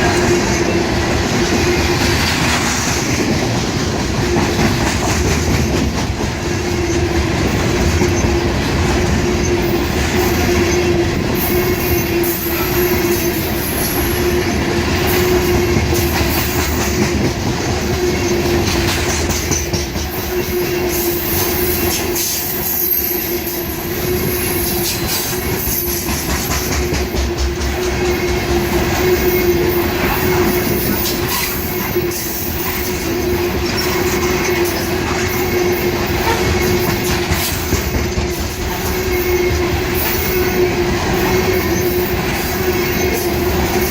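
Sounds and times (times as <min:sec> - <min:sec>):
train wheels on rails: 0:00.0 - 0:43.9
high-pitched wheel squeal: 0:20.2 - 0:25.9, 0:38.7 - 0:43.9.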